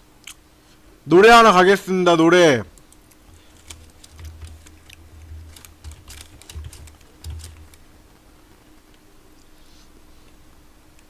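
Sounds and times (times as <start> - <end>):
computer keyboard clicks: 2.8 - 7.8
dull low thumps: 3.9 - 7.8.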